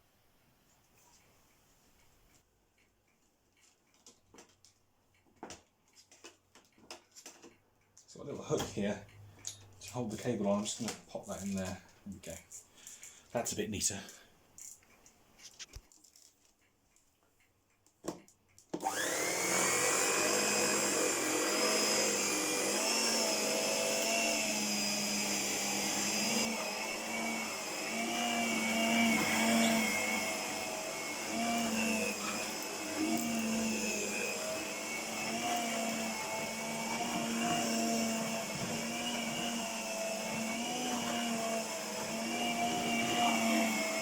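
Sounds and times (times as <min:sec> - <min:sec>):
electric motor whining: 0:18.8 - 0:44.0.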